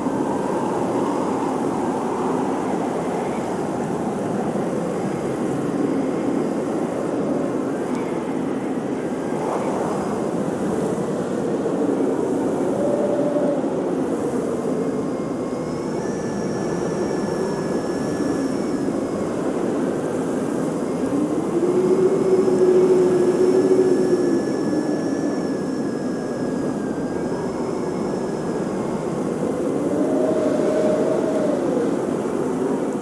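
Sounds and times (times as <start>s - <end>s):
wavering whistling tones: 12.2s - 33.0s.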